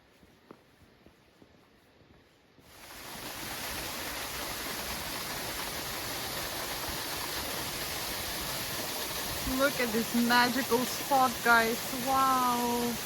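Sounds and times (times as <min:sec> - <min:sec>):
waterfall rushing: 0:02.7 - 0:13.0.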